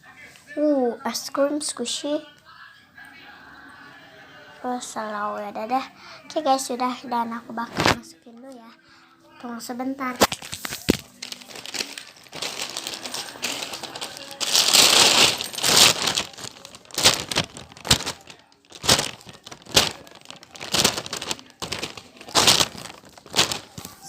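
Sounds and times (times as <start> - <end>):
plastic crinkling and rustling: 7.6 - 8.0, 10.1 - 24.0.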